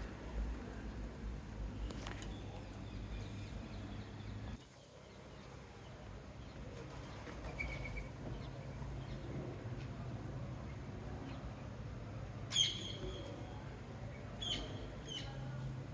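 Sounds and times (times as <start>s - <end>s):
small birds chirping: 1.7s - 10.0s, 12.5s - 15.6s.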